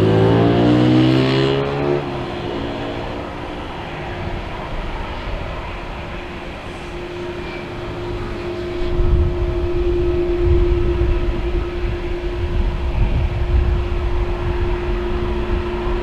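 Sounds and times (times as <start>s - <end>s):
deep rumble: 0.0s - 16.0s
jet engines humming: 0.0s - 16.0s.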